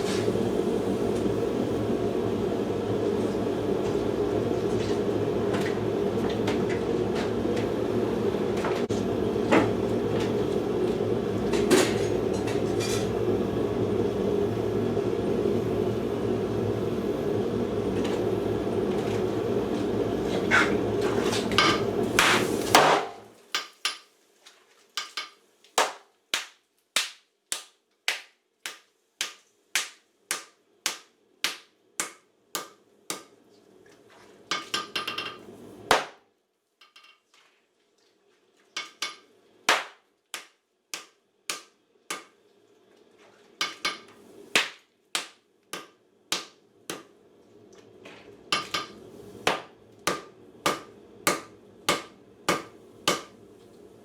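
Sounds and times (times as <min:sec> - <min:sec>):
hammer striking steel on anvil: 0:49.5 - 0:53.3.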